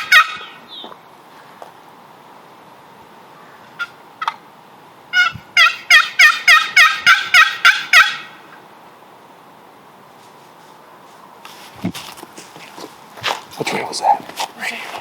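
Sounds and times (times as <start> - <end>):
turkey box call yelps: 0.0 - 0.8, 5.1 - 8.4.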